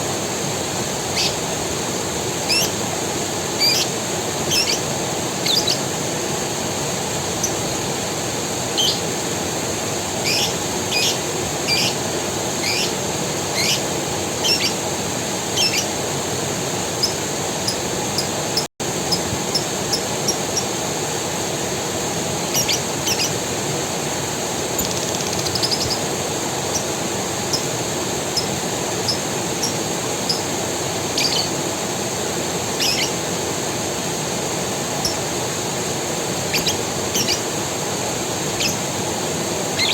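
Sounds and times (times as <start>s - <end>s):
creek water running: 0.0s - 39.9s
high steady hiss: 0.0s - 39.9s
birds chirping: 1.0s - 1.5s, 2.4s - 2.8s, 3.5s - 6.0s, 8.7s - 9.1s, 10.2s - 16.0s, 16.9s - 20.8s, 22.4s - 23.4s, 24.7s - 31.6s, 32.7s - 33.2s, 35.0s - 35.3s, 36.4s - 37.5s, 38.5s - 38.9s.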